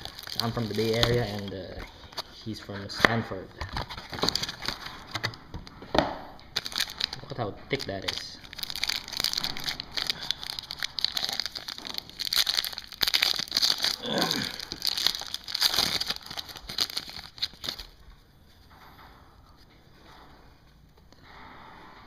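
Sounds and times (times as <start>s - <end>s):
plastic wrapping crinkling and tearing: 0.0s - 3.0s, 3.6s - 5.6s, 6.5s - 18.0s.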